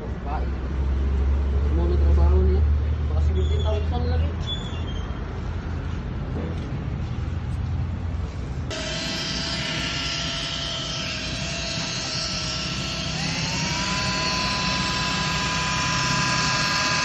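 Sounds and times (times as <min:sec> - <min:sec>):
power tool motor whining: 0:08.7 - 0:17.0.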